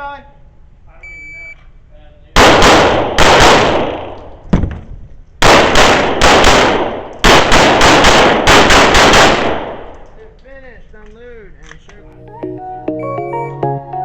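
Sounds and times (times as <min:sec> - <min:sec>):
pistol shots echoing: 0:02.4 - 0:04.4, 0:05.4 - 0:10.0
light crack: 0:09.8 - 0:12.0.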